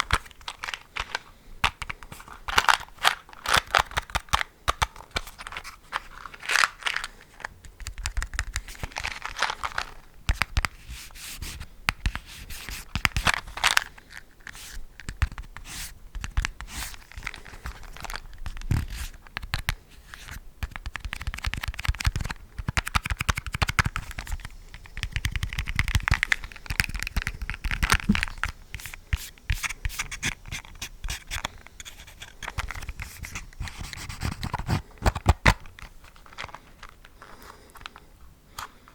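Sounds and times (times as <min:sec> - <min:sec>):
small crackling clicks: 0:20.6 - 0:29.3
scratching and rubbing: 0:22.7 - 0:35.3.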